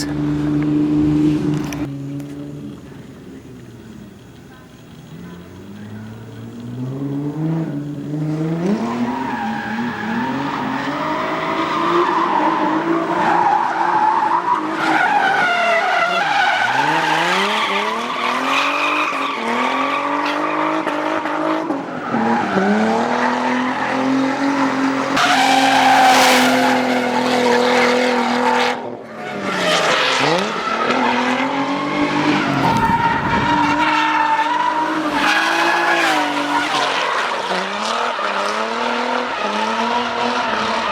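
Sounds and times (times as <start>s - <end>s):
car engine revving: 0.0s - 3.0s, 5.2s - 40.9s
tyres screeching: 32.0s - 38.6s.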